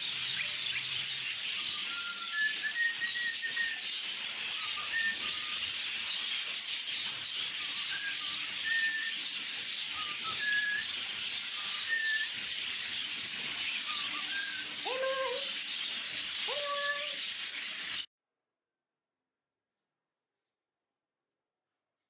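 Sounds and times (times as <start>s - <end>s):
birds chirping: 0.0s - 18.1s
whistled bird notes: 0.0s - 18.1s.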